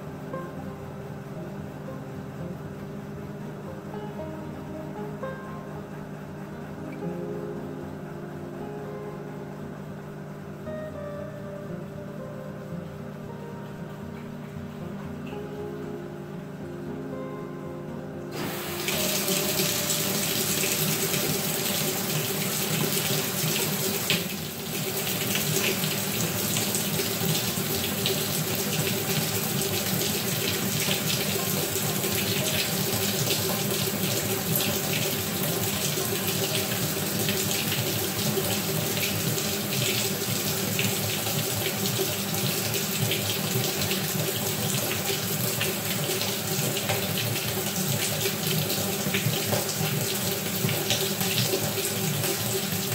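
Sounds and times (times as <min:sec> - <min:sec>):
water pouring into washer tub: 0:18.3 - 0:52.9.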